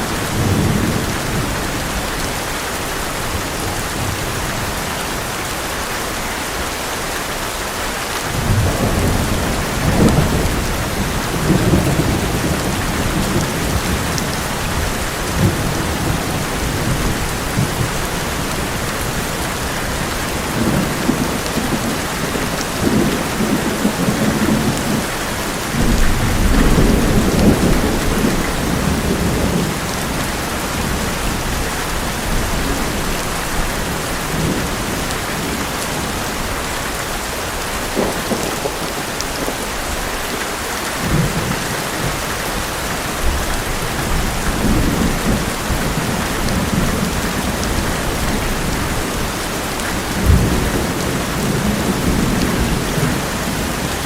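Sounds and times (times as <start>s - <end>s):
heavy rain on metal roof: 0.0s - 54.0s
thunder rumbling: 8.3s - 40.3s, 41.0s - 54.0s.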